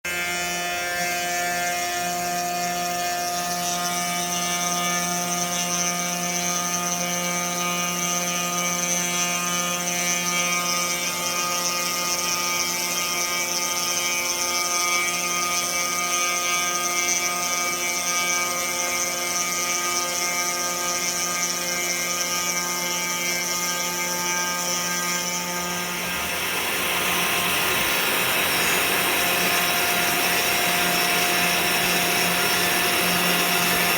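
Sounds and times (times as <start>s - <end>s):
router spindle motor whining: 0.1s - 33.9s
steady rushing noise: 25.8s - 33.9s.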